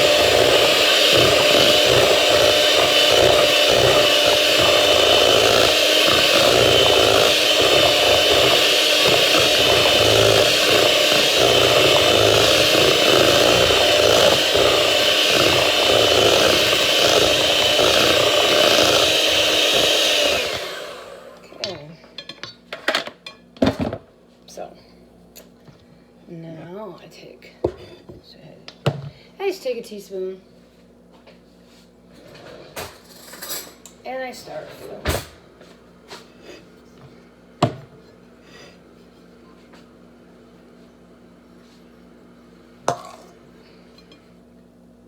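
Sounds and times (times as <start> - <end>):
electric hand mixer running: 0.0 - 21.8.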